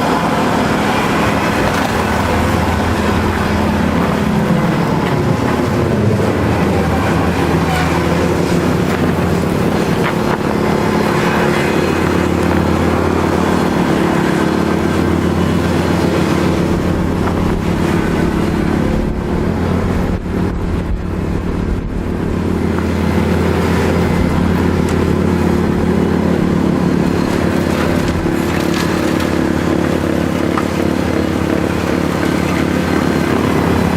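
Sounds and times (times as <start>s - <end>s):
tractor diesel engine running: 0.0s - 33.9s.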